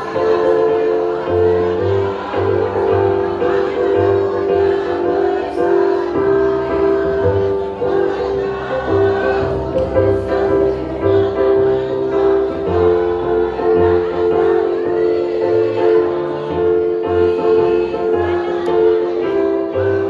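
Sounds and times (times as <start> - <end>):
choir singing long notes: 0.0 - 20.0.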